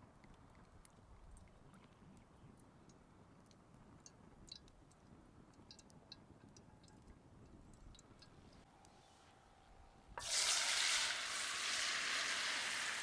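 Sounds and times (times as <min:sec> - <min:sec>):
campfire crackling: 0:00.0 - 0:09.0.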